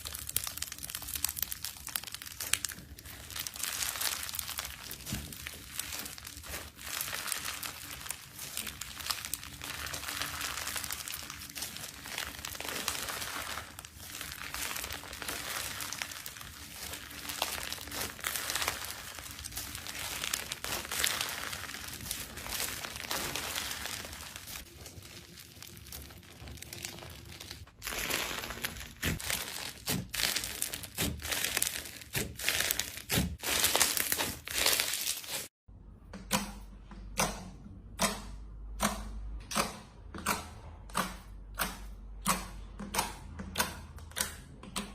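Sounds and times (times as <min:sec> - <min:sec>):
slime crackling and popping: 0:00.0 - 0:35.5.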